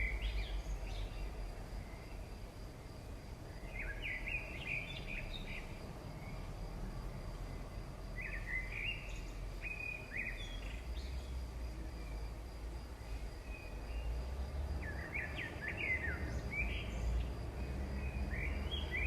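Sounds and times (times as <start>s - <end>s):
steady background hiss: 0.0s - 19.0s
birds twittering: 14.8s - 19.0s.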